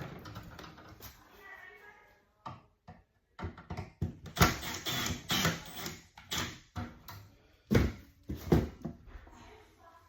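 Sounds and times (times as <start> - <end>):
knocks clicks and scraping: 0.0 - 1.2.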